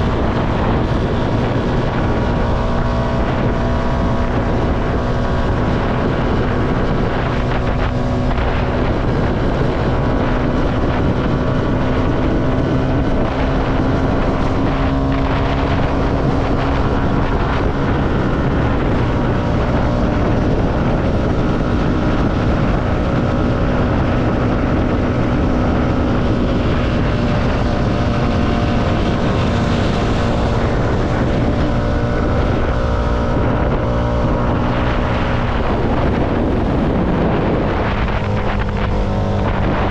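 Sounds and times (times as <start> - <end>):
motorcycle engine cruising: 0.0 - 39.9
wind rushing over microphone: 0.0 - 39.9.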